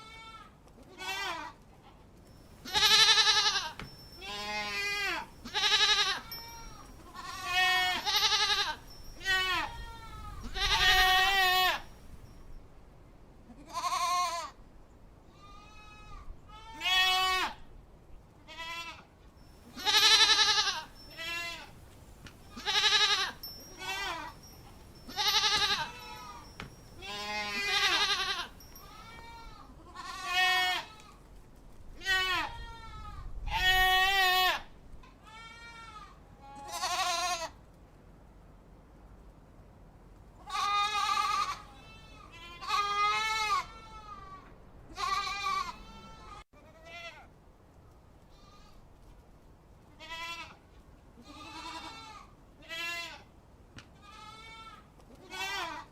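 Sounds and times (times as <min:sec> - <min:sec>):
goat bleating: 0:00.0 - 0:01.6, 0:02.6 - 0:11.9, 0:13.5 - 0:14.5, 0:15.4 - 0:17.6, 0:18.5 - 0:19.1, 0:19.7 - 0:21.7, 0:22.4 - 0:31.2, 0:32.0 - 0:37.6, 0:40.4 - 0:47.2, 0:49.9 - 0:50.6, 0:51.2 - 0:53.3, 0:54.0 - 0:55.9.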